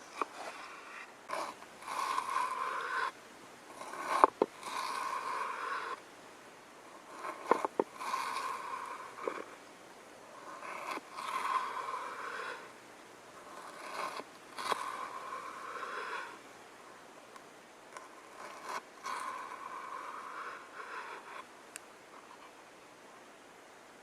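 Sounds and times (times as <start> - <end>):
knife scraping on chopping board: 0.2 - 3.1, 3.8 - 6.0, 7.2 - 9.5, 13.5 - 16.3.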